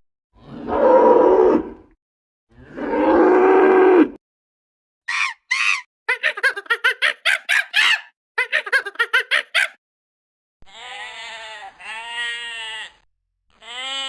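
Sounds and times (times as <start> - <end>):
rough animal call: 0.4 - 1.8, 2.6 - 4.2.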